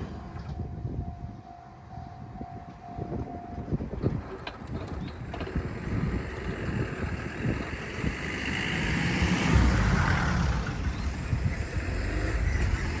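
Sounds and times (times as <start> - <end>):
vehicle rumble passing by: 5.2 - 13.0.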